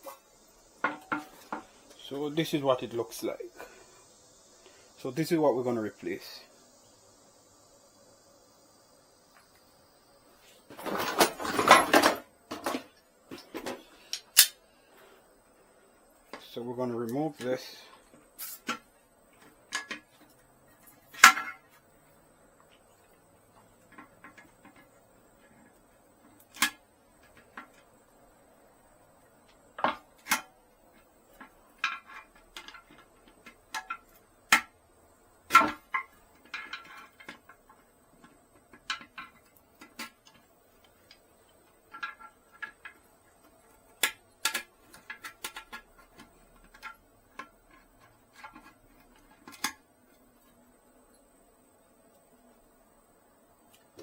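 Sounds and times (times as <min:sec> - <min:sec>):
toilet tank parts clicking and rattling: 0:00.8 - 0:01.7, 0:10.7 - 0:14.6, 0:17.4 - 0:21.8, 0:23.5 - 0:28.0, 0:29.4 - 0:49.9.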